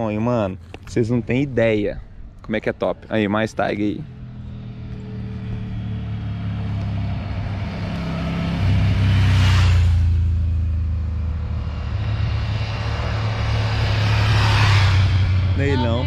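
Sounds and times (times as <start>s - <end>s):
motorcycles riding past: 3.2s - 16.0s.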